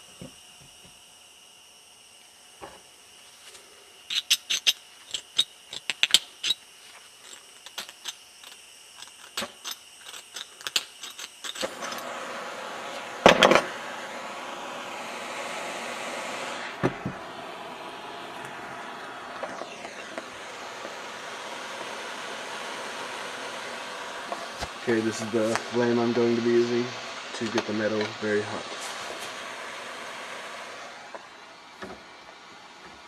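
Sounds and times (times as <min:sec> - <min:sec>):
metallic clicks of small tools: 0:04.1 - 0:06.6, 0:07.2 - 0:11.7
propane torch hissing: 0:07.6 - 0:33.0.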